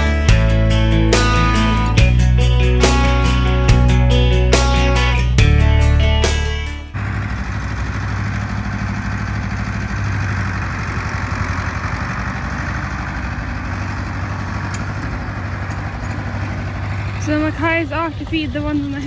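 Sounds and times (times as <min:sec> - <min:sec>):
guitar music: 0:00.0 - 0:07.0
vehicle engine idling: 0:00.0 - 0:19.0.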